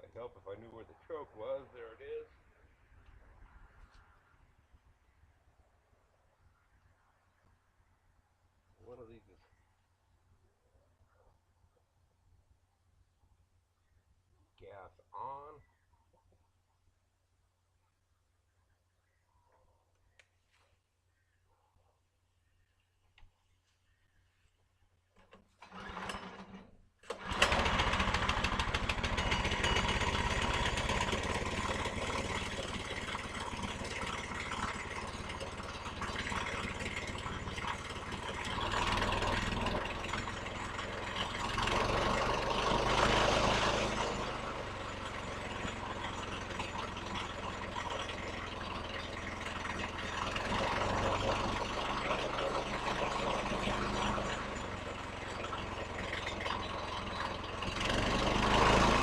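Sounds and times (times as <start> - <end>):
gasoline engine starting and running: 25.2 - 59.0.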